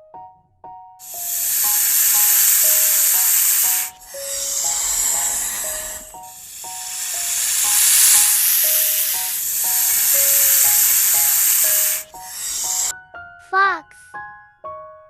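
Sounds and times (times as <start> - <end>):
snake hissing: 1.0 - 12.9.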